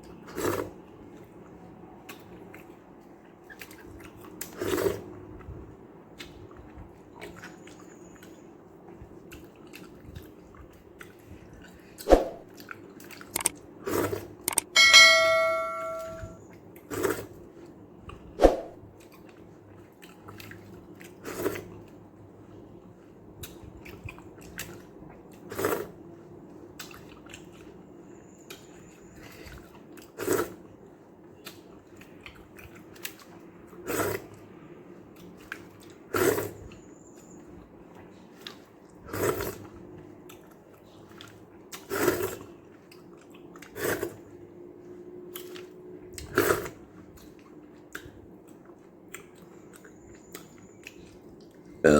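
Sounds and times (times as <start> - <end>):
chewing and mouth clicks: 0.0 - 14.7, 19.0 - 22.0, 23.0 - 51.8
metallic ring: 14.5 - 16.4.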